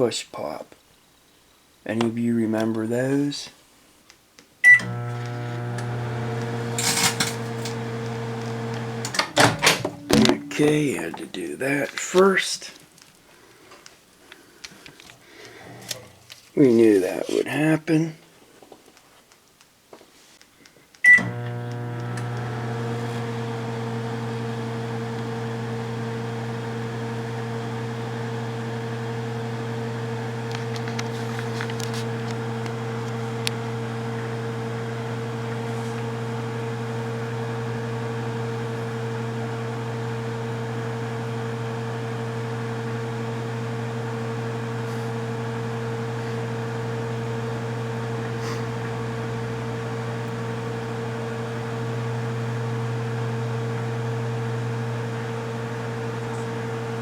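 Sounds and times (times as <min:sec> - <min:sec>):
microwave oven humming: 0:04.6 - 0:11.0, 0:21.1 - 0:57.0.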